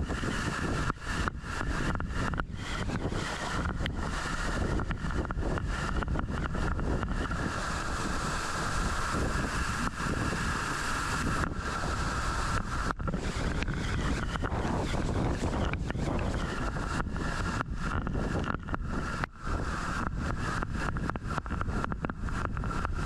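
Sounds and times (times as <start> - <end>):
wind buffeting microphone: 0.0 - 23.0
waterfall rushing: 7.2 - 12.9.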